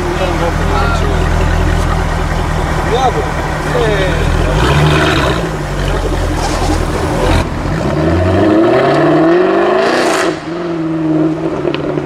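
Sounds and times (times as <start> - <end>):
car engine revving: 0.0 - 12.0.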